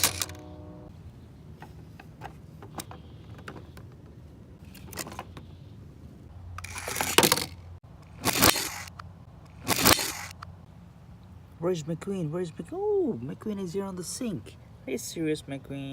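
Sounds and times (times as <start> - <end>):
plastic toys clattering: 0.0 - 0.4, 6.6 - 8.9.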